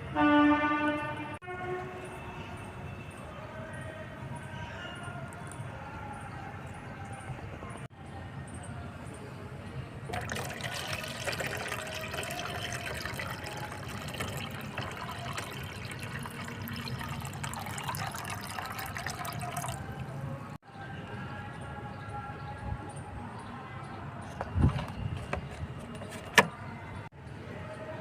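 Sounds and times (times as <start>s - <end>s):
water pouring into a container: 10.1s - 20.3s.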